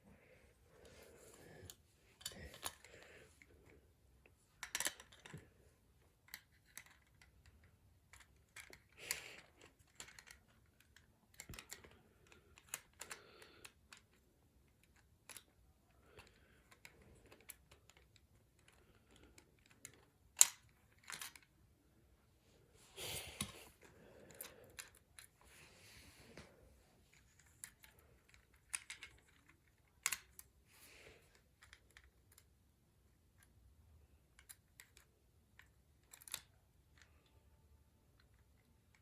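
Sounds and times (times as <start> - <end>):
plastic toy parts clicking: 2.2 - 2.9, 4.6 - 5.4, 6.2 - 15.6, 16.2 - 21.5, 24.3 - 25.3, 27.2 - 30.5, 31.3 - 32.6, 34.2 - 37.2.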